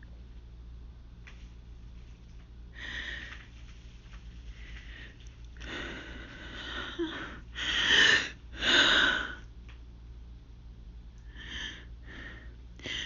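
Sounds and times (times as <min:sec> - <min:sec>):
gasping breaths: 0:04.5 - 0:09.5.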